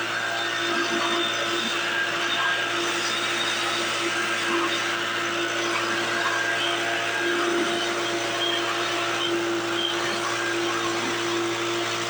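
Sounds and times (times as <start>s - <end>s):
leaf blower running: 0.0s - 12.0s.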